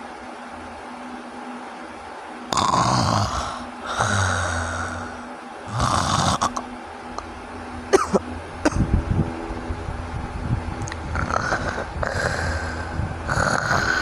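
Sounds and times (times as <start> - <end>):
person snoring: 2.5 - 7.3, 10.9 - 14.0.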